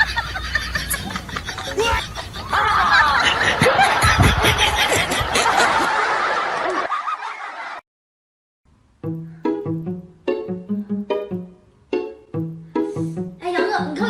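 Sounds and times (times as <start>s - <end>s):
people laughing: 0.0s - 7.8s.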